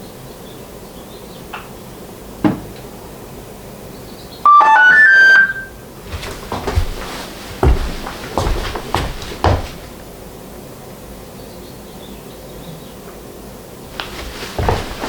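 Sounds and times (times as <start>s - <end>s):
electronic startup chime: 4.5s - 5.7s
light handling knocks: 14.0s - 15.0s.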